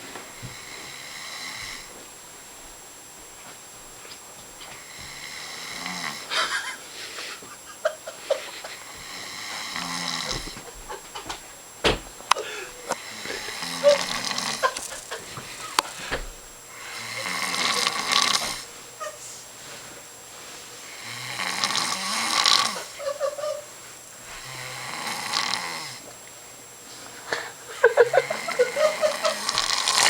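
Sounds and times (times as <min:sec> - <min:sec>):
person snoring: 0:00.4 - 0:02.0, 0:04.8 - 0:10.6, 0:12.4 - 0:19.4, 0:20.8 - 0:23.6, 0:24.4 - 0:26.1, 0:27.2 - 0:30.0.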